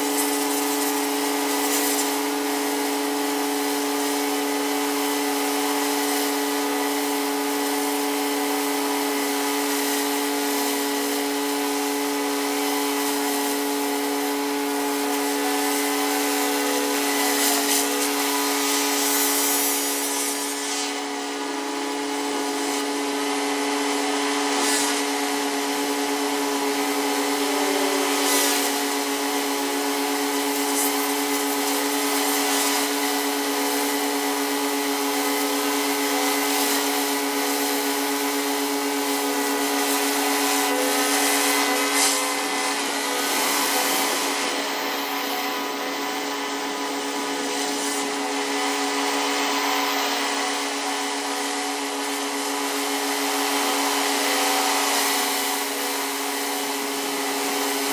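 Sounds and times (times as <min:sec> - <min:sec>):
pressure washer running: 0:00.0 - 0:57.9
spray hissing on concrete: 0:00.0 - 0:57.9.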